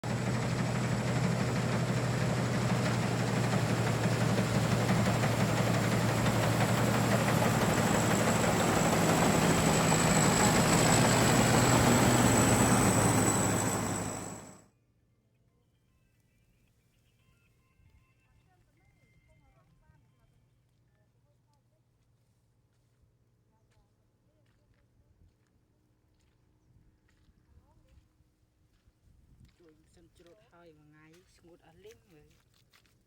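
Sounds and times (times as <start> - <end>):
tractor engine running: 0.0 - 14.6
thin high whine: 0.1 - 14.6.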